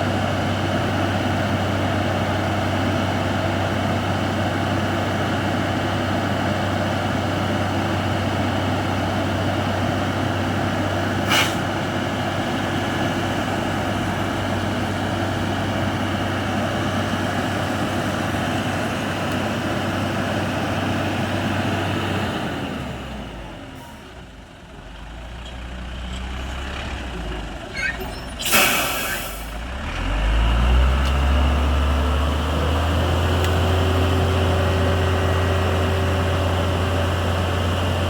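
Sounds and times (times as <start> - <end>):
diesel truck engine running: 0.0 - 38.0
short sharp hiss: 11.2 - 11.7, 28.4 - 29.6.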